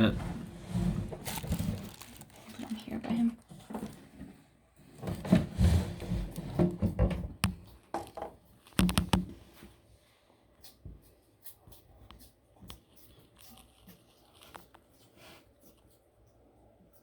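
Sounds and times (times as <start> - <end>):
light scratching and clicking: 10.6 - 17.0.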